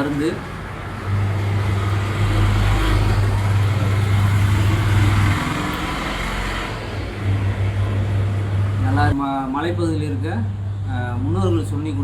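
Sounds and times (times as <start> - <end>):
motor humming: 0.8 - 9.1.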